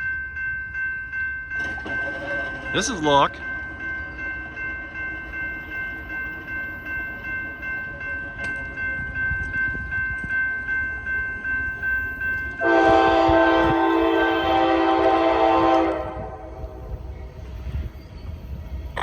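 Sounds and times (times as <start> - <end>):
crossing warning bell ringing: 0.0 - 19.0
low train rumble: 0.0 - 19.0
locomotive air horn: 12.6 - 16.8.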